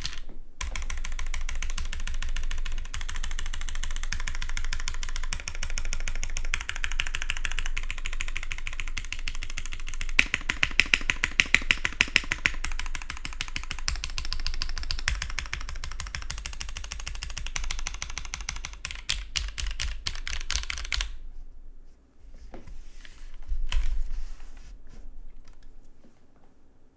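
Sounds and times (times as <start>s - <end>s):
mechanical keyboard typing: 0.0s - 21.2s.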